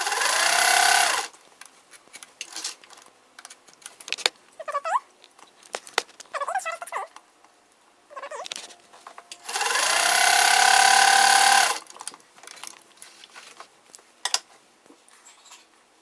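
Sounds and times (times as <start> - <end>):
sewing machine motor running: 0.0 - 1.3, 9.4 - 11.8.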